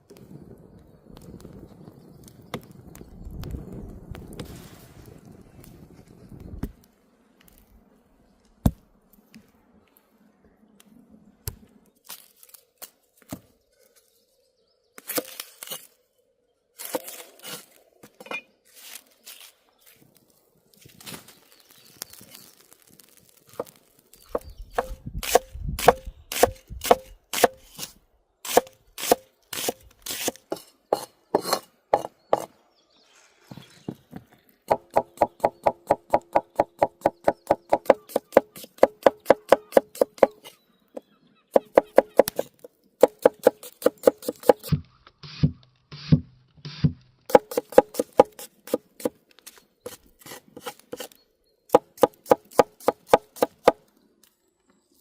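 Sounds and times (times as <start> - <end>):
knife chopping on wooden board: 46.8 - 49.1, 51.8 - 53.8.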